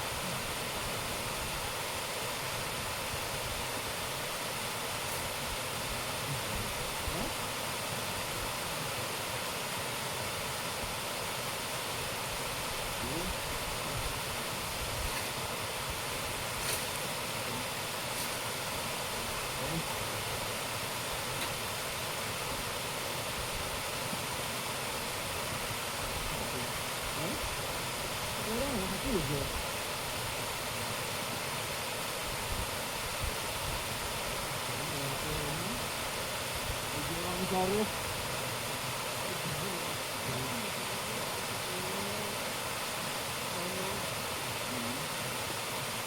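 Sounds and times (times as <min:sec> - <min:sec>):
waterfall roaring: 0:00.0 - 0:46.0.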